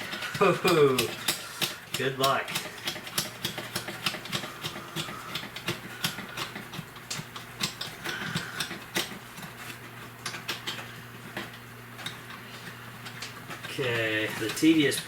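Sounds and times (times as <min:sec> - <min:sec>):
hand tool clicking: 0:00.0 - 0:09.5.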